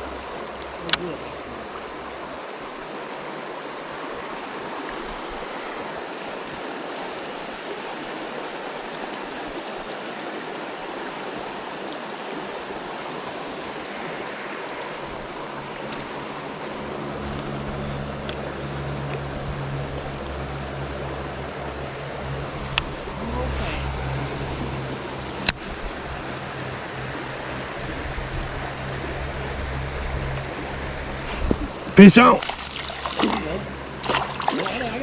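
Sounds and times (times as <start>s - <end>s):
river water rushing: 0.0s - 35.0s
low engine hum: 15.0s - 35.0s.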